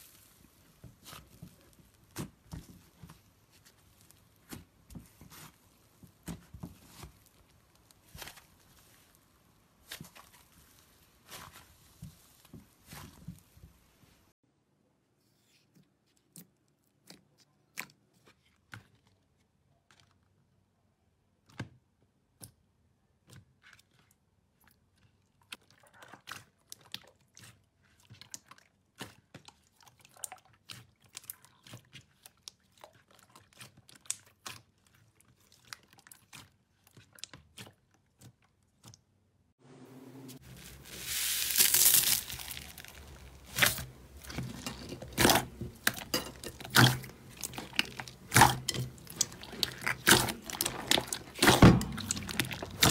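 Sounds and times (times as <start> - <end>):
slime clicking and crackling: 25.5 - 39.0, 40.7 - 52.9.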